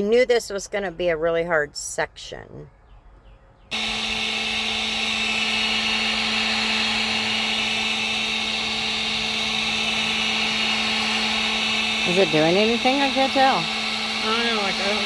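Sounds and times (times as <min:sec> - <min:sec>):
hot-air blower motor hum: 0:03.7 - 0:15.0.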